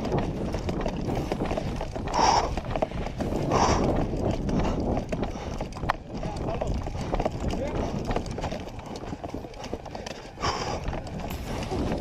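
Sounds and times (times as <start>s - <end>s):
footsteps on rough ground: 0.0s - 12.0s.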